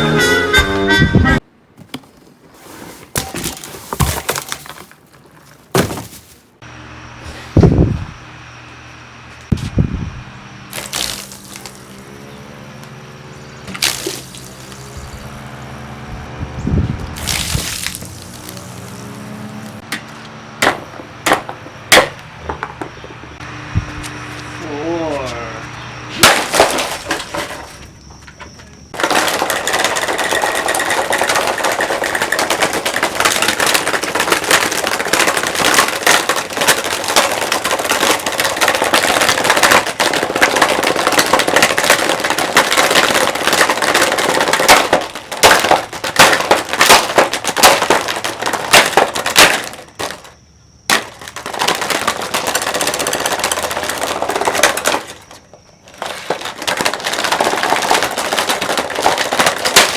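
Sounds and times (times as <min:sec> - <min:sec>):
plastic fan cracking and crunching: 0:10.7 - 0:12.4, 0:13.7 - 0:15.9, 0:17.1 - 0:22.2, 0:26.2 - 0:28.4, 0:29.0 - 0:59.9.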